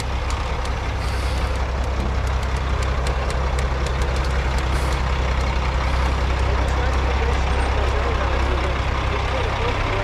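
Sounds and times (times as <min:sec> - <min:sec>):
sharp clicks: 0:00.0 - 0:05.6
diesel engine running: 0:00.0 - 0:10.0.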